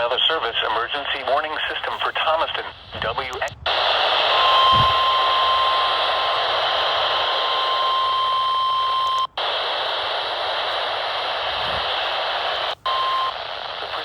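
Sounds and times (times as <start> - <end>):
radio alarm tone: 0.0 - 14.0
radio static hiss: 0.0 - 14.0.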